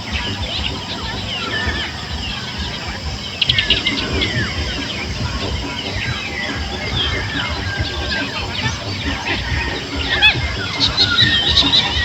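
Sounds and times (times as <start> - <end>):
birds chirping and calling: 0.0 - 12.0
low rumbling noise: 0.0 - 12.0.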